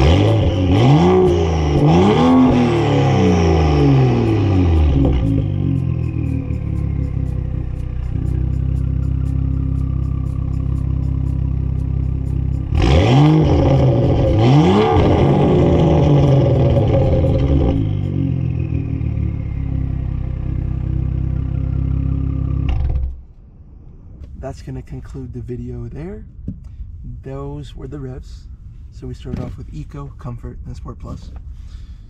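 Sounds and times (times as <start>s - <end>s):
loud rough exhaust noise: 0.0s - 21.1s
car engine idling and revving: 0.0s - 32.0s.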